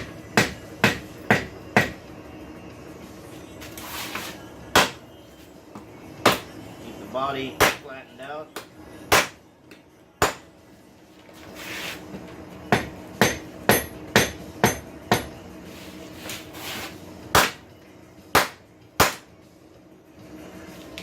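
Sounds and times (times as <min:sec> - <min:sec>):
hammer striking hot steel: 0:10.2 - 0:10.4, 0:12.7 - 0:15.4, 0:18.4 - 0:19.3.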